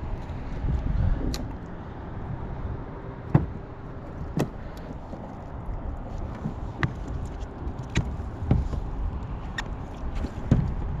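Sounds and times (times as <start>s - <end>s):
wind rumbling on microphone: 0.0s - 11.0s.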